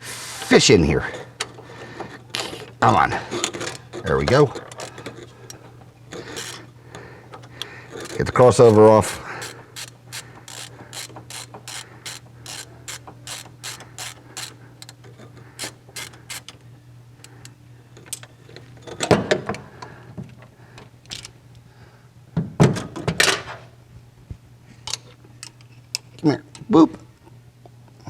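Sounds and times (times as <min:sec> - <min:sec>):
ratchet wrench clicking: 0:06.1 - 0:06.6, 0:07.9 - 0:15.0, 0:15.6 - 0:16.6.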